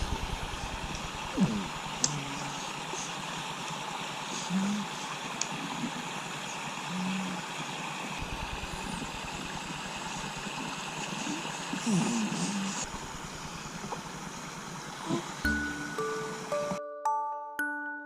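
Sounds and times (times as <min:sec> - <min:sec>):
steady hiss: 0:00.0 - 0:16.8
baby snoring: 0:01.4 - 0:02.6, 0:10.6 - 0:12.9.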